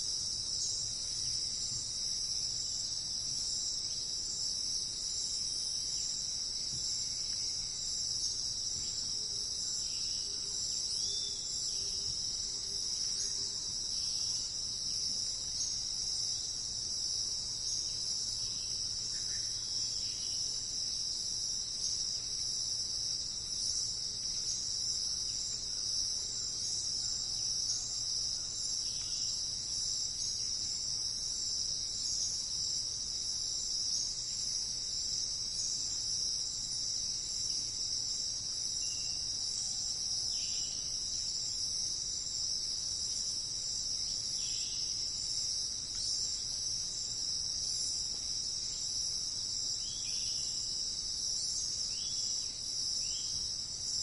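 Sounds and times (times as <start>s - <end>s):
insect chorus trilling: 0.0s - 54.0s
faint bird chirps: 9.9s - 12.2s.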